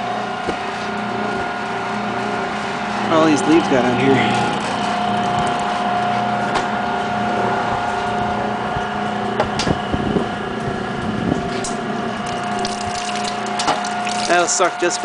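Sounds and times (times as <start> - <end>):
washing machine motor whining: 0.0 - 15.0.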